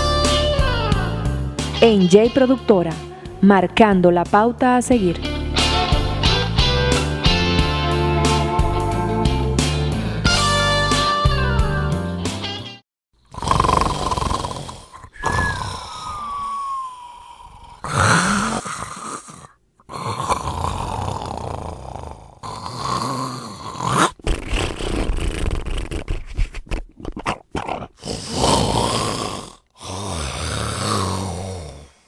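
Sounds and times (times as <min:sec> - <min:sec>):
person snoring: 0:09.0 - 0:10.3, 0:13.3 - 0:26.2, 0:27.6 - 0:32.0.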